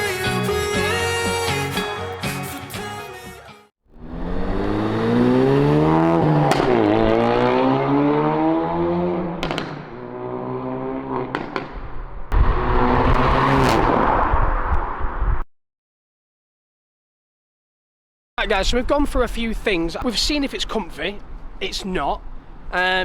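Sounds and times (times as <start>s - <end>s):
car engine accelerating hard: 4.0s - 11.6s, 12.4s - 14.4s.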